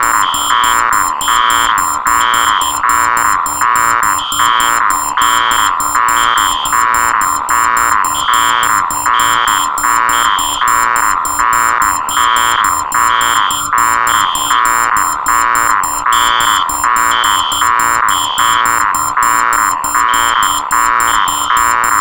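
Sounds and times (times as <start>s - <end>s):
pulsing low alarm tones: 0.0s - 22.0s
shrill fast beeping: 0.0s - 22.0s.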